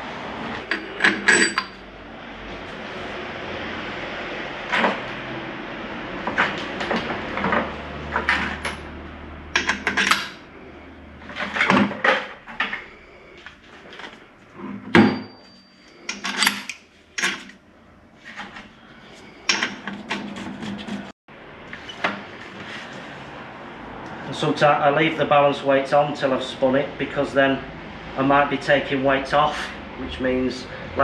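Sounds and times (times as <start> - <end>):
metal tools clinking and clanking: 0.6 - 1.8, 14.8 - 17.6.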